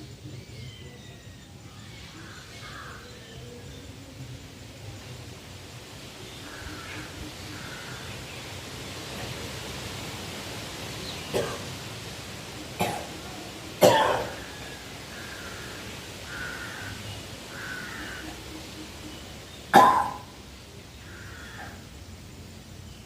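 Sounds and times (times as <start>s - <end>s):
man coughing and hawking: 13.8s - 14.4s.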